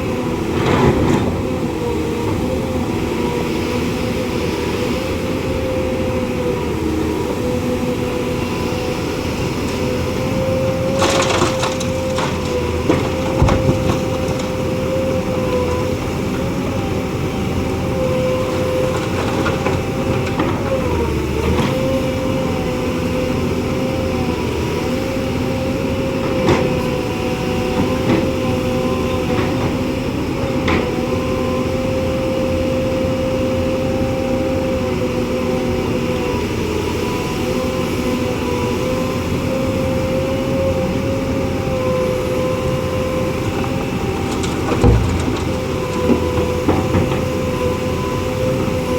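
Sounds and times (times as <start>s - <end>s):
truck engine droning: 0.0s - 48.9s
sharp knocks and clunks: 44.4s - 47.3s.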